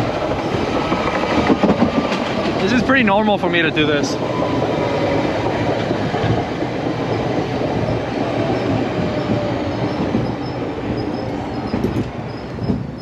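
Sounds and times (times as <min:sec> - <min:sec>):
train rumbling on tracks: 0:00.0 - 0:13.0
high wheel squeal: 0:07.9 - 0:13.0.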